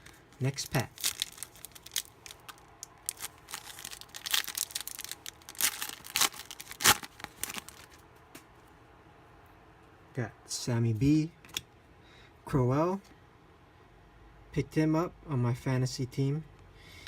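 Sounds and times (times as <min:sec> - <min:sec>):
card pack wrapper tearing: 0:00.4 - 0:08.0.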